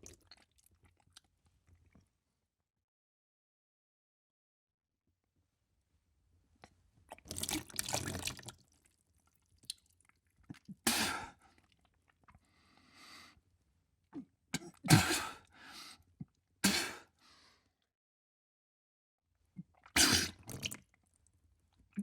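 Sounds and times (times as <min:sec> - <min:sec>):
person retching and vomiting: 0:10.4 - 0:11.4, 0:14.2 - 0:15.5, 0:16.6 - 0:17.0, 0:19.6 - 0:20.9.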